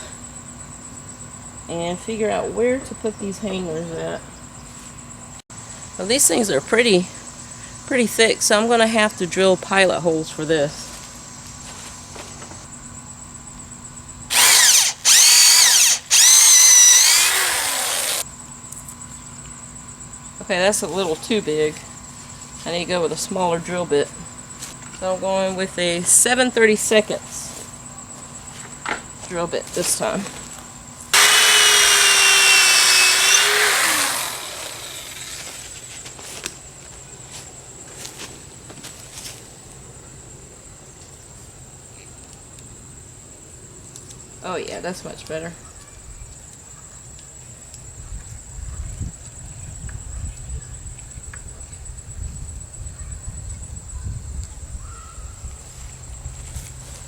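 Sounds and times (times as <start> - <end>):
power drill boring into wood: 14.3 - 18.2, 31.2 - 35.8.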